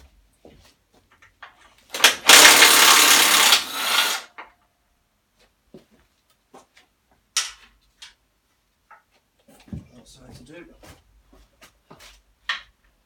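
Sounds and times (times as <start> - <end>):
handheld power tool running: 1.9 - 4.3.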